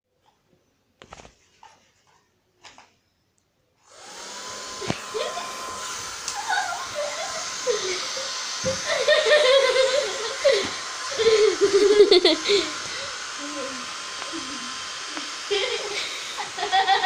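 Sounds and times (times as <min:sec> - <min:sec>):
hair dryer whine: 0:03.8 - 0:17.0.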